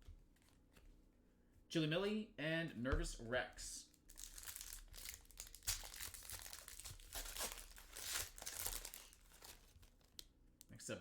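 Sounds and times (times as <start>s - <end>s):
wrapper tearing and crinkling: 4.1s - 10.3s.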